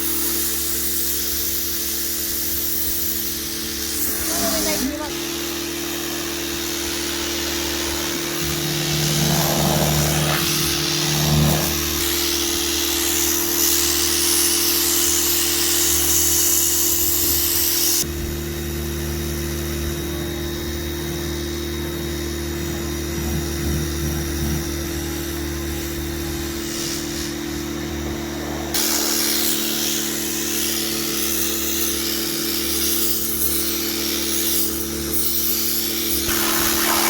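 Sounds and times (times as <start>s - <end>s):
water jet hissing on metal: 0.0s - 18.0s, 25.8s - 37.0s
pressure washer motor hum: 0.0s - 37.0s.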